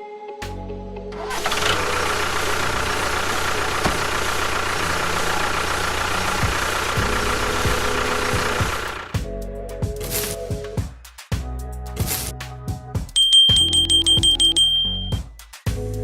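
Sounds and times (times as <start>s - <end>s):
motor whirring: 1.2s - 9.1s.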